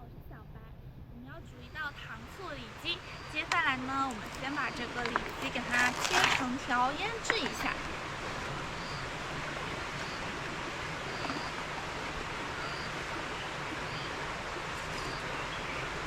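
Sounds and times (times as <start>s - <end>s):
mountain stream rushing: 1.6s - 16.0s.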